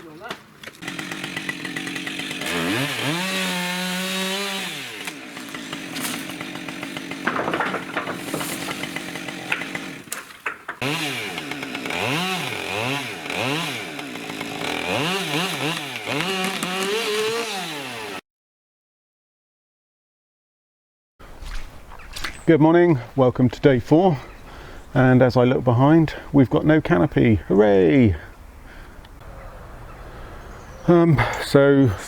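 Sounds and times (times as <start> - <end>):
chainsaw throttle blips: 0.8 - 7.3, 8.6 - 10.1, 10.8 - 18.2
chainsaw engine revving: 0.8 - 10.1, 10.8 - 18.2.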